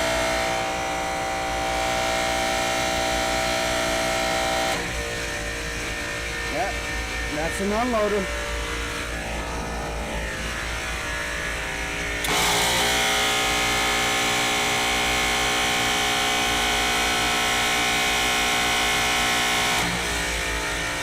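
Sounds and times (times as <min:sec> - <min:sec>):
compressor humming: 0:00.0 - 0:14.4.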